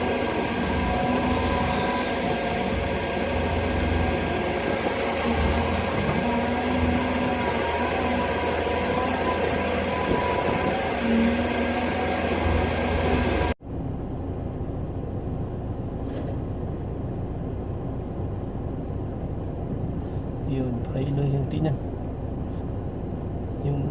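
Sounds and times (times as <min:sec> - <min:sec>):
hydraulic whining: 0:00.0 - 0:13.6
excavator diesel engine running: 0:00.0 - 0:23.9.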